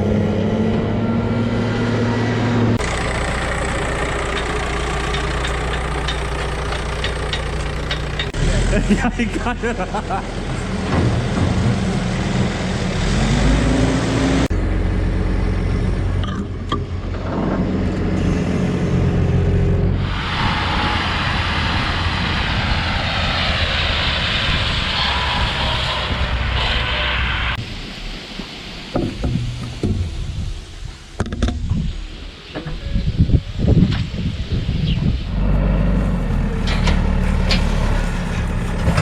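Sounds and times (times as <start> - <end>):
combine harvester engine hum: 0.0 - 39.0
loud rushing noise: 17.4 - 32.4.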